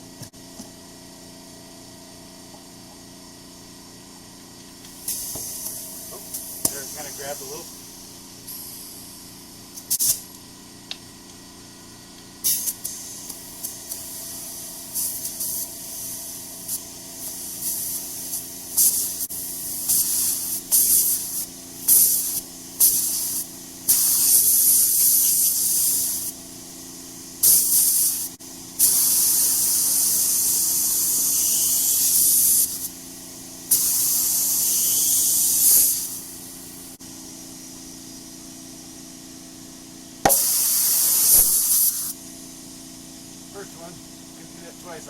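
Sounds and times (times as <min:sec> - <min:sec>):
compressed air hissing into tire: 0:04.9 - 0:10.3, 0:12.4 - 0:38.9, 0:40.2 - 0:43.9.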